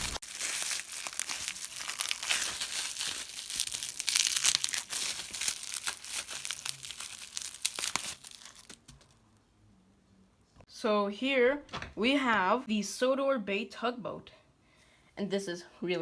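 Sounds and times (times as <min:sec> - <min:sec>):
bubble wrap crinkling and tearing: 0:00.0 - 0:09.2.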